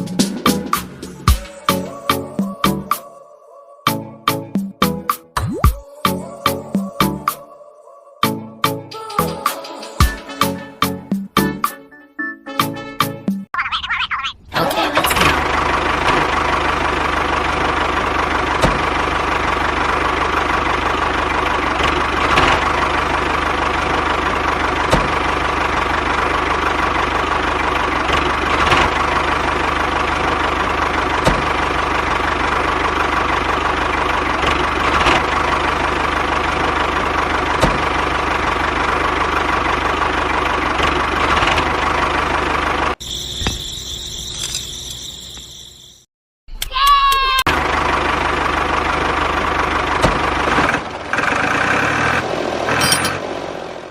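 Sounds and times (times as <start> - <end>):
toy tractor engine drone: 14.9 - 46.1.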